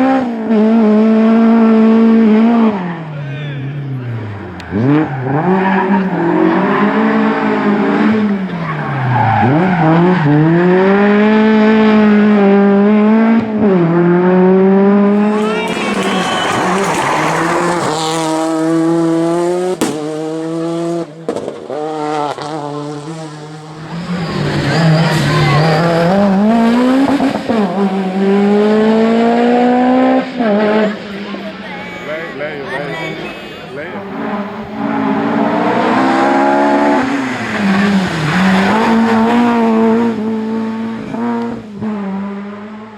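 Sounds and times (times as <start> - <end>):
rally car engine revving: 0.0 - 31.6, 33.8 - 42.9
sharp cracks: 15.2 - 19.0, 19.7 - 20.5.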